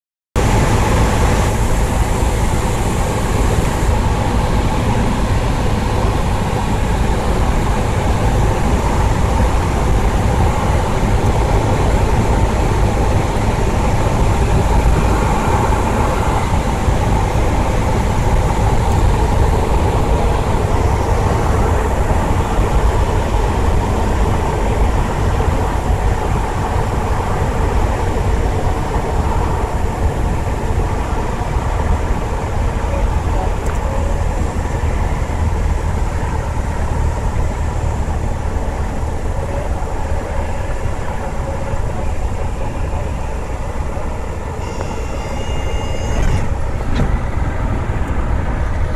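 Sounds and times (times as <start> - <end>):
light aircraft engine drone: 0.4 - 48.9.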